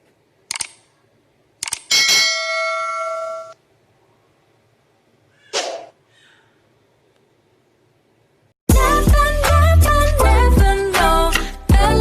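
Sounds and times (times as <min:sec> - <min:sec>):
quick clicks: 0:00.5 - 0:01.0, 0:01.6 - 0:01.9
bell-like metallic clang: 0:01.9 - 0:03.6
short swish: 0:05.5 - 0:05.9.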